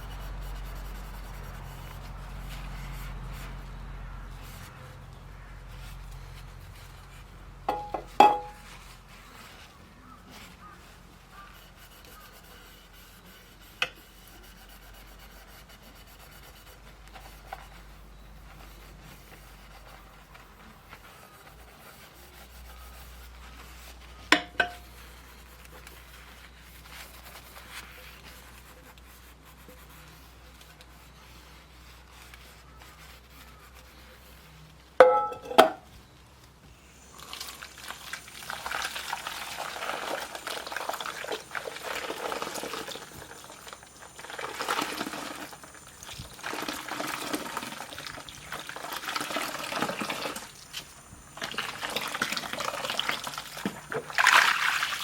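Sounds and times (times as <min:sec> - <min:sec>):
faint rubbing: 0:00.0 - 0:35.8
metal cookware clinking: 0:07.7 - 0:08.6, 0:24.4 - 0:24.8, 0:35.0 - 0:35.8
low steady hum: 0:34.7 - 0:38.6.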